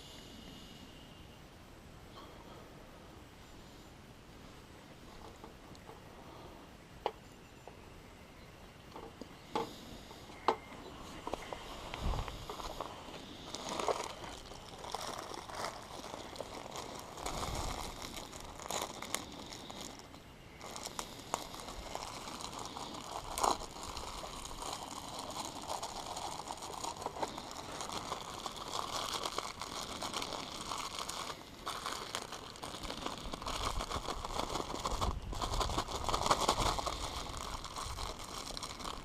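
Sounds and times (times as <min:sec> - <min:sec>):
crinkling and rustling: 0:08.9 - 0:39.0.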